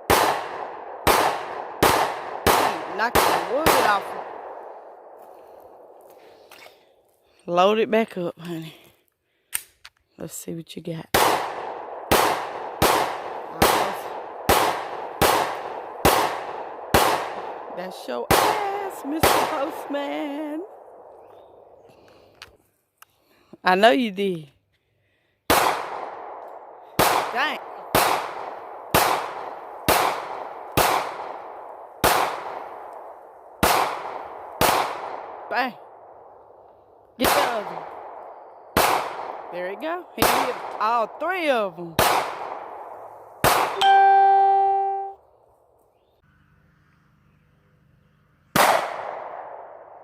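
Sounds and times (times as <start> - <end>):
gunshot echo: 0.0 - 5.9, 11.1 - 18.6, 25.5 - 35.5, 37.2 - 39.5, 42.0 - 44.0, 48.6 - 50.0
handgun shots: 0.1 - 4.5, 11.2 - 17.6.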